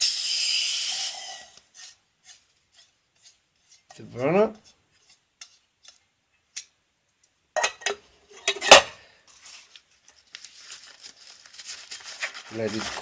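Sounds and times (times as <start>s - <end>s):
metal cook-kit parts clinking: 7.6s - 9.0s.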